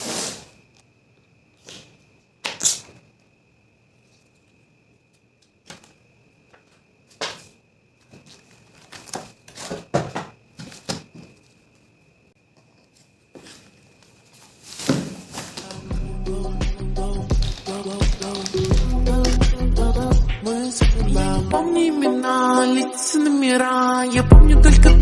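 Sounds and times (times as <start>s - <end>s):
packaging rustling and scraping: 0.0s - 0.6s, 7.3s - 11.9s, 12.9s - 16.0s, 17.3s - 19.4s.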